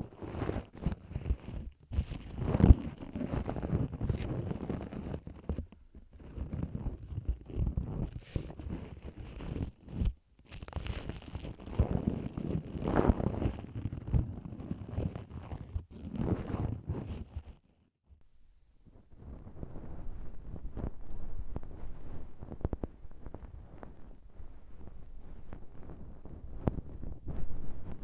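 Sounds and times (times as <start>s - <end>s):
ear pick scratching microphone: 0.0s - 17.6s, 18.2s - 28.0s
deep rumble: 18.3s - 28.0s.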